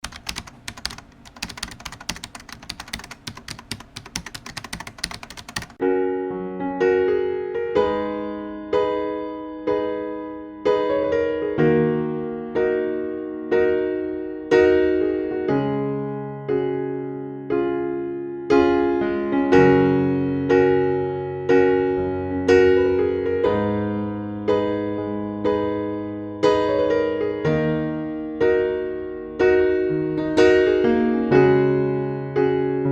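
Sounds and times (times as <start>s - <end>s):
keyboard typing clicks: 0.0s - 5.8s.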